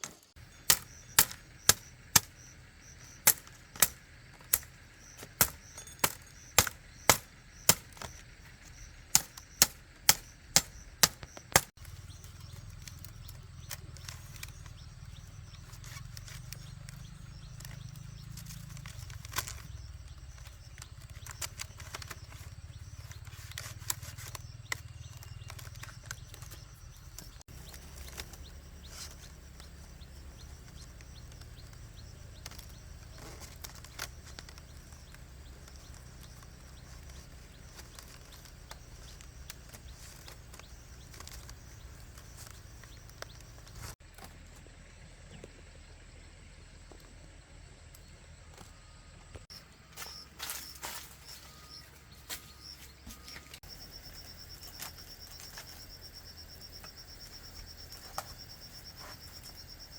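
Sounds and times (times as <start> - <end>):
sharp blows on wood: 0.6 - 2.4, 3.1 - 8.3, 9.1 - 11.8.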